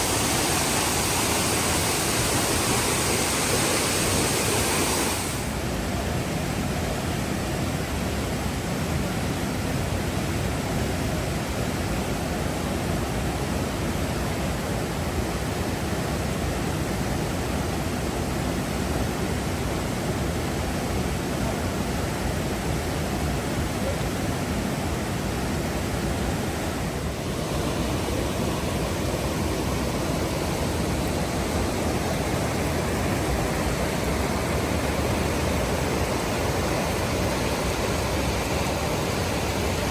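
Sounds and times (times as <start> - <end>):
waterfall rushing: 0.0 - 6.3, 18.3 - 39.9.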